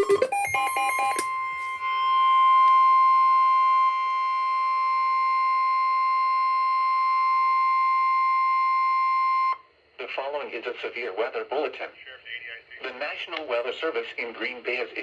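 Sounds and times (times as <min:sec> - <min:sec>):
high warning alarm tone: 0:00.0 - 0:09.6.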